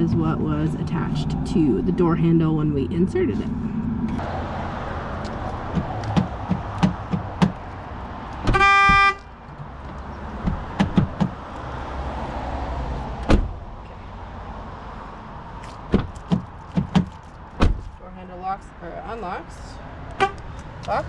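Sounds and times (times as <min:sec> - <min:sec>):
car horn toot: 0:08.4 - 0:09.4, 0:20.2 - 0:20.4
car door latch clicks: 0:13.2 - 0:13.5
car door lock clunk: 0:13.2 - 0:13.5.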